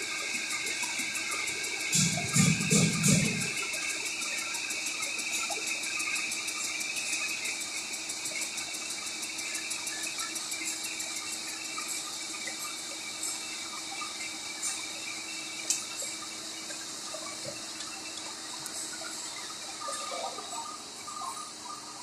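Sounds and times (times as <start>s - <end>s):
rapid even ticking: 0.0s - 21.8s
metal lathe hiss and hum: 0.0s - 22.0s.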